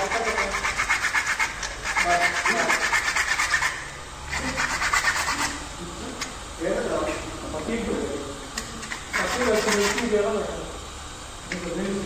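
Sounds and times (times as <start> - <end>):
sawing plastic cable duct: 0.0 - 3.8, 9.1 - 10.1.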